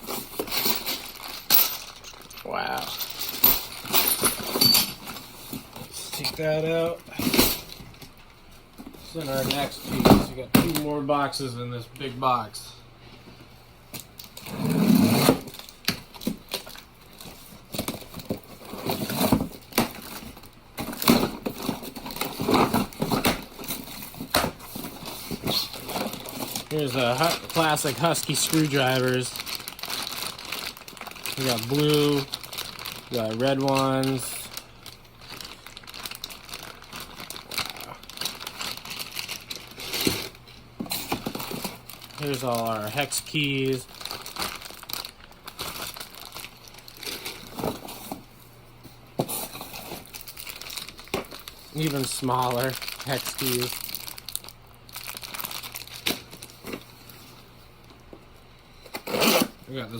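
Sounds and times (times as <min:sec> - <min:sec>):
packaging knocks and crinkling: 0:15.4 - 0:48.3, 0:49.2 - 0:57.2.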